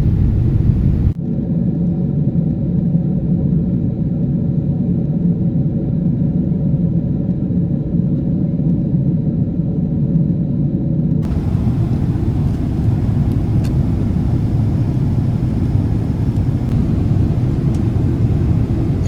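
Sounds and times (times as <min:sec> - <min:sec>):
airliner engines droning in cabin: 0:00.0 - 0:19.0
air rushing past fuselage: 0:11.2 - 0:19.0.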